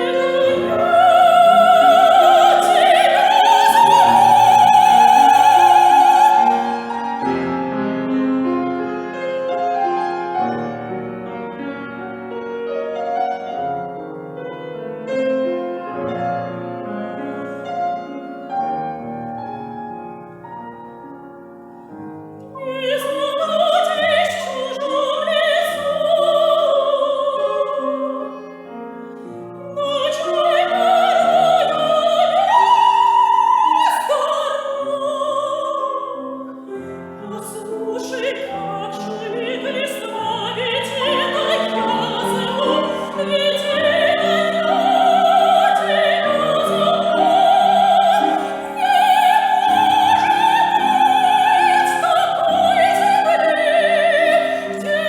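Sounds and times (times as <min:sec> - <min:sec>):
soprano singing opera: 0:00.0 - 0:10.7, 0:22.4 - 0:55.0
piano accompaniment: 0:00.0 - 0:55.0.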